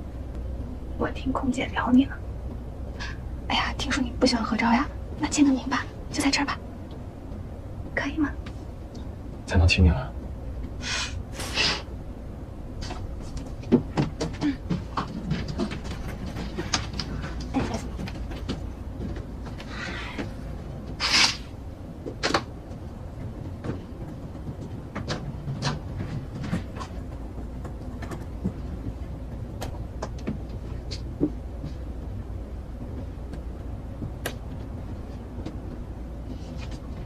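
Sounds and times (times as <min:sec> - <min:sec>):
airliner cabin drone: 0:00.0 - 0:37.0
soft clicks and rustles: 0:12.8 - 0:21.0, 0:21.9 - 0:37.0.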